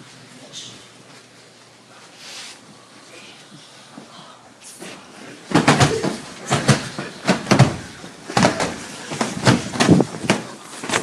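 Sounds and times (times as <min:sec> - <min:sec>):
heavy thuds and bangs: 0:05.5 - 0:11.0.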